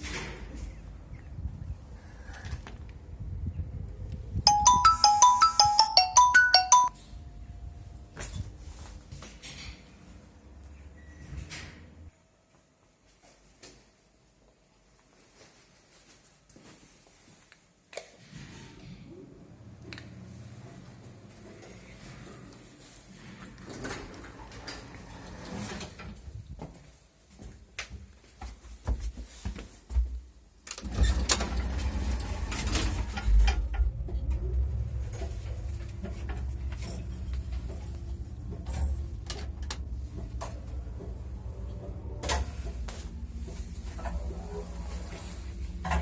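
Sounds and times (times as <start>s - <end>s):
elevator car rumbling: 30.9s - 46.0s.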